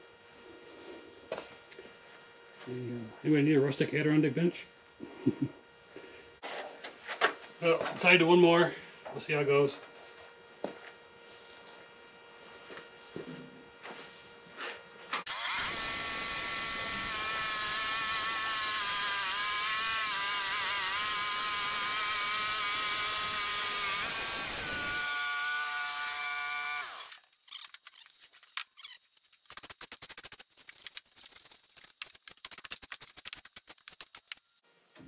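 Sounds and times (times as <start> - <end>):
bandsaw mill cutting log: 15.2 - 27.4.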